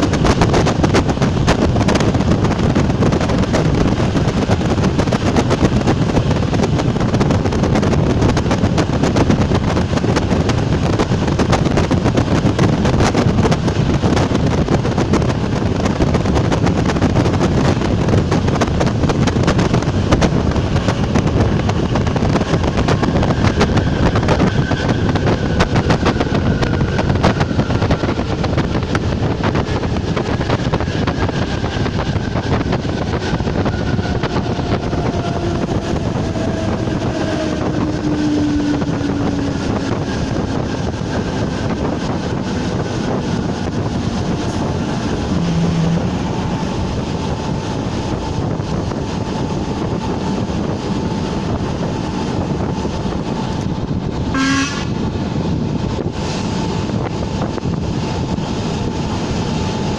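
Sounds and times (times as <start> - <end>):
train wheel and rail noise: 0.0 - 59.9
high squeal: 23.0 - 28.4.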